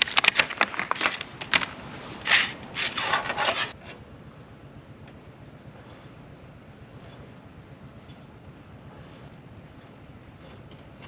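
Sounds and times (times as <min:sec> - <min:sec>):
scraping rustling cuts: 0:00.0 - 0:04.0.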